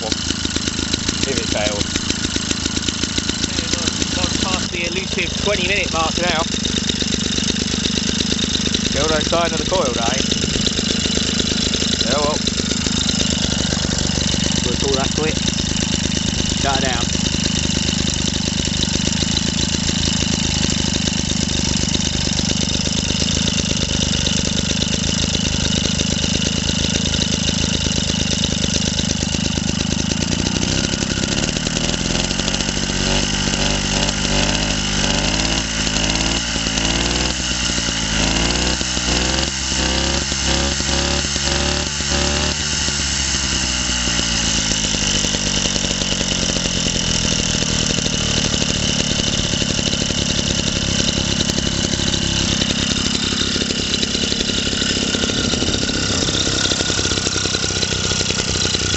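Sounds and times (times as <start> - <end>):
stationary engine running: 0.0 - 58.9.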